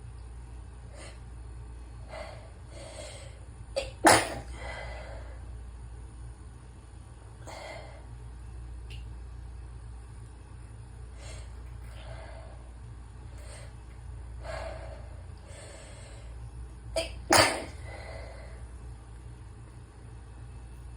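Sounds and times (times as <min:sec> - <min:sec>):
congested breathing: 0:02.0 - 0:03.5, 0:11.1 - 0:16.4, 0:17.7 - 0:18.8
person sneezing: 0:03.8 - 0:04.5, 0:17.0 - 0:17.8.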